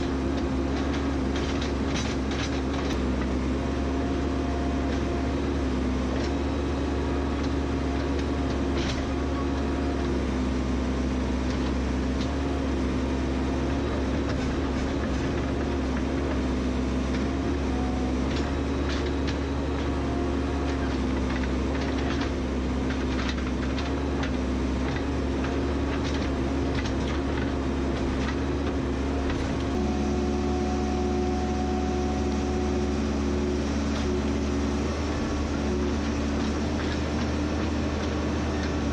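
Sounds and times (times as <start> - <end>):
metal clanks and knocks: 0.0 - 3.3
heavy machine engine running: 0.0 - 38.9.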